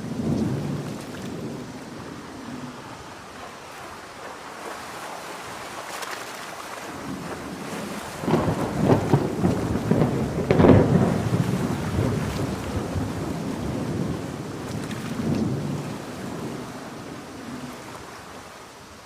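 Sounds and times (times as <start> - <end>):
crackling thunderclap: 0.0 - 3.6, 6.9 - 17.6
steady rain: 0.0 - 19.0.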